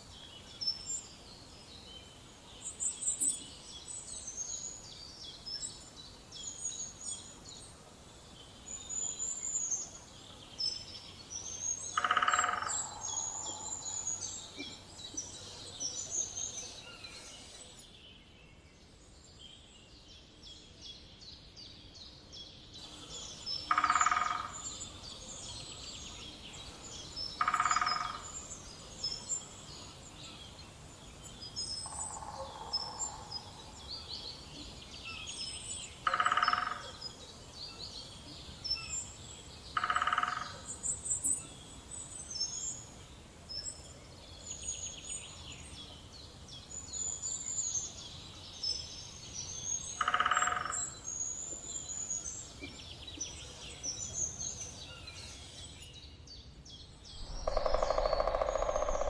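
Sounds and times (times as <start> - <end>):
small birds chirping: 0.0 - 59.0
woodpecker drumming on wood: 12.0 - 12.7, 23.7 - 24.6, 27.4 - 28.2, 36.0 - 36.9, 39.8 - 40.6, 50.0 - 50.8, 57.2 - 59.0.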